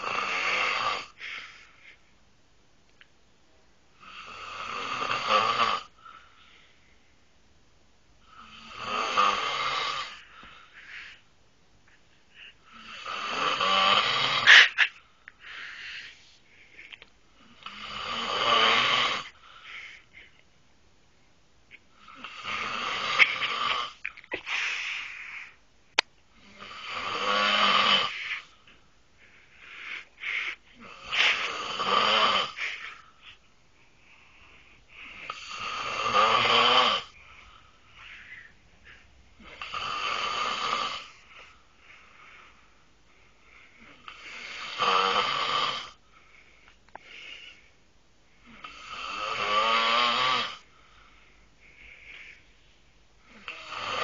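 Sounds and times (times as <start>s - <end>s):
man snoring loudly: 0.0s - 1.2s, 4.0s - 5.9s, 8.3s - 10.2s, 12.7s - 14.5s, 17.6s - 19.3s, 22.2s - 24.0s, 26.4s - 28.2s, 30.8s - 32.6s, 35.3s - 37.1s, 39.5s - 41.2s, 44.1s - 46.0s, 48.5s - 50.6s, 53.4s - 54.0s
quiet breathing: 0.0s - 5.1s, 5.8s - 18.3s, 19.0s - 54.0s.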